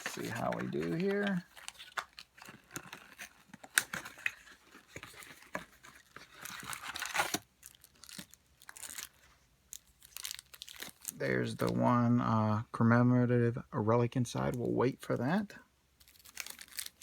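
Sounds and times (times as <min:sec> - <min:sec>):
packaging rustling: 0:00.0 - 0:11.8, 0:16.0 - 0:17.0
packaging tearing and crinkling: 0:00.0 - 0:11.8, 0:16.0 - 0:17.0.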